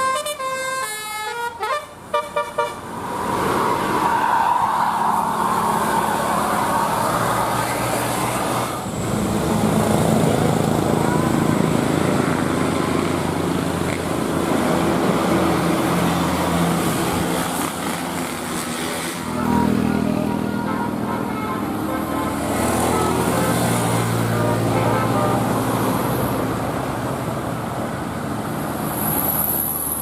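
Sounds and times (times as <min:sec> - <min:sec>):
bus engine drone: 0:00.0 - 0:30.0
road noise rush: 0:00.0 - 0:30.0.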